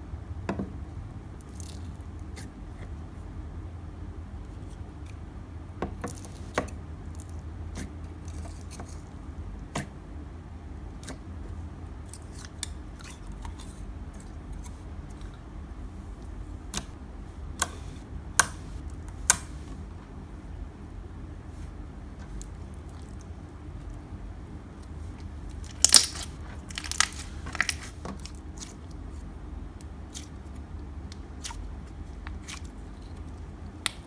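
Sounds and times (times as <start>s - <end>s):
steady low hum: 0.0s - 34.0s.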